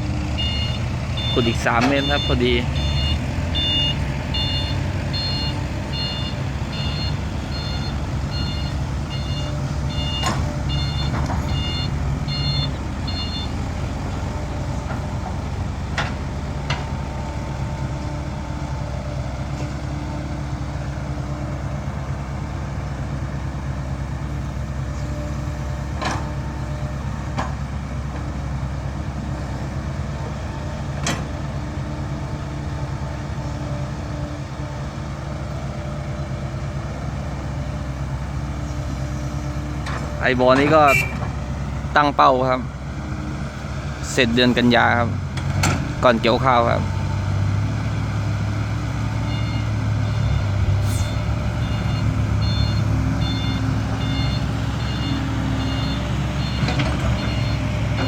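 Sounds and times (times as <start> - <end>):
diesel engine running: 0.0 - 58.0
reversing alarm beeping: 0.3 - 14.2, 40.4 - 41.2, 49.2 - 58.0.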